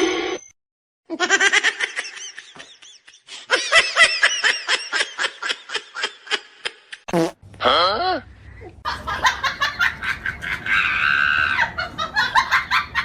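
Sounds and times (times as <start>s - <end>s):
person laughing hard: 8.8s - 13.0s.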